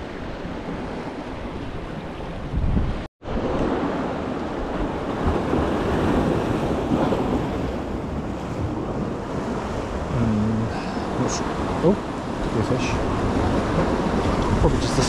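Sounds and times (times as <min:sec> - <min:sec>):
sea swell washing against rocks: 0:03.3 - 0:15.0.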